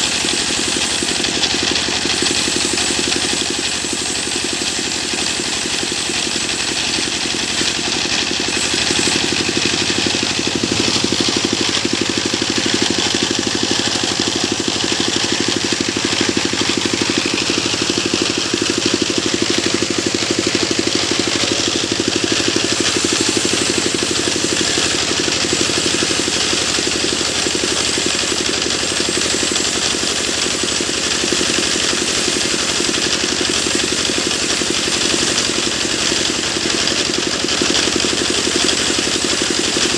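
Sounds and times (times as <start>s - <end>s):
hiss: 0.0s - 39.9s
sawmill machine drone: 0.0s - 39.9s.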